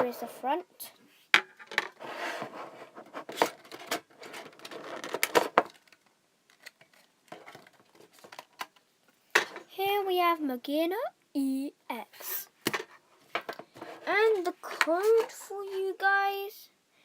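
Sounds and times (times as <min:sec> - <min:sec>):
packaging rustling and crinkling: 0:03.2 - 0:08.8.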